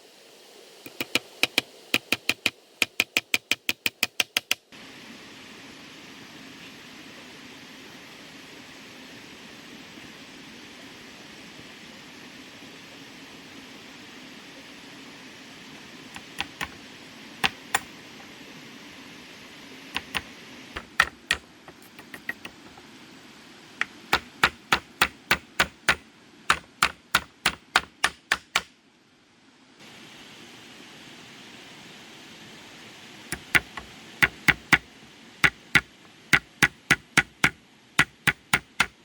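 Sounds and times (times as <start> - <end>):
low hiss: 0.0 - 39.0
sharp knocks: 17.4 - 17.9, 20.8 - 22.8, 23.8 - 28.7, 33.3 - 34.8, 35.4 - 39.0.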